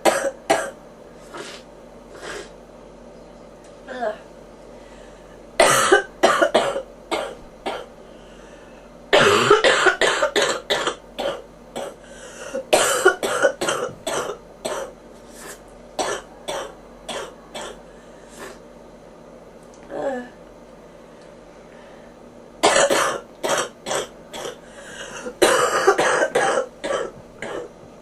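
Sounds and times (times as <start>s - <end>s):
person coughing: 0.0s - 0.8s, 5.6s - 7.9s, 9.2s - 14.9s, 22.6s - 27.7s.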